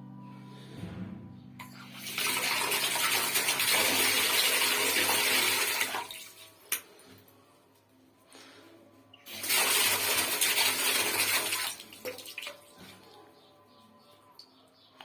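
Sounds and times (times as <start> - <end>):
water running from a faucet: 2.0 - 6.4, 9.3 - 12.4.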